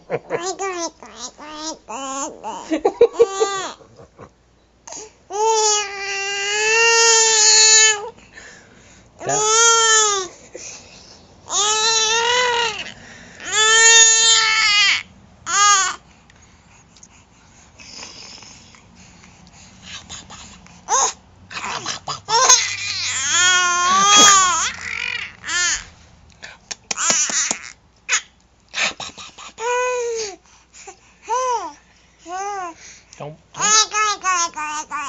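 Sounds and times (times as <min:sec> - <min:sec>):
baby squealing: 0:20.9 - 0:25.9.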